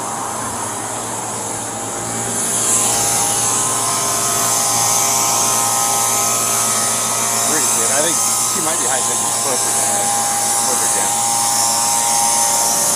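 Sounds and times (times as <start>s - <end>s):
mechanical whirring and hiss: 2.6s - 12.9s.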